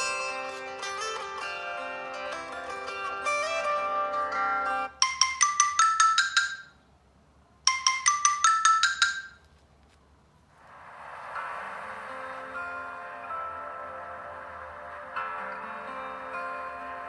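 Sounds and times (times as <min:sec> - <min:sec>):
marimba-like ringtone: 0:00.0 - 0:00.8, 0:04.9 - 0:06.8, 0:07.7 - 0:09.5
plucked-tone ringtone: 0:00.0 - 0:01.0, 0:04.9 - 0:06.8, 0:07.7 - 0:09.5.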